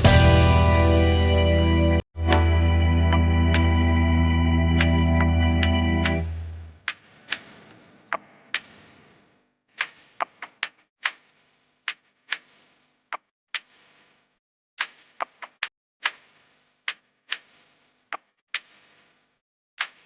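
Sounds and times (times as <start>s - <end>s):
eating clicks and crunches: 19.8s - 20.0s.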